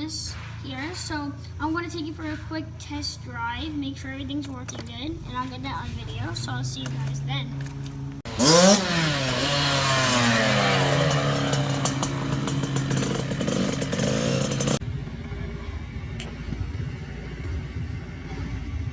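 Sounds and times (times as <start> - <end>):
two-stroke engine revving: 0.0 - 15.0
faint low rumble: 14.8 - 18.9.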